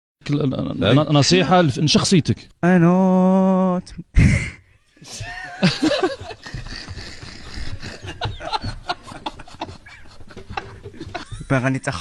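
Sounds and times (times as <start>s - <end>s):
people snickering and laughing: 5.0s - 11.7s.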